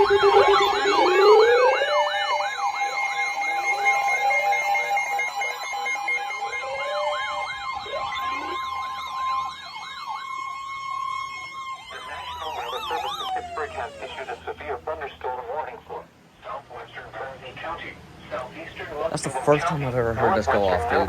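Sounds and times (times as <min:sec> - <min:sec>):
electronic siren yelping and wailing: 0:00.0 - 0:15.8, 0:20.2 - 0:21.0.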